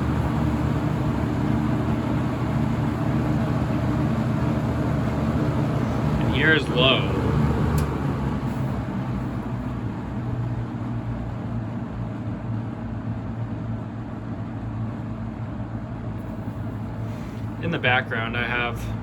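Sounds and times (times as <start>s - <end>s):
box fan air rushing: 0.0s - 11.5s, 14.7s - 17.8s
low motor hum: 0.0s - 19.0s.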